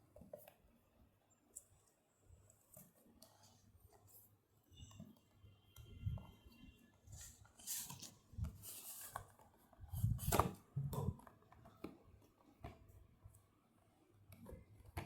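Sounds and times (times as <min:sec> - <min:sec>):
packaging rustling and scraping: 0:07.0 - 0:11.2.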